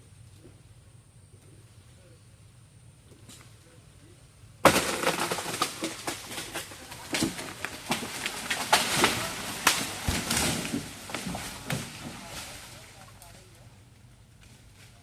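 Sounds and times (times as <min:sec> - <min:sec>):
sharp snaps of branches: 0:04.6 - 0:13.4
leafy branches rustling: 0:04.6 - 0:15.0.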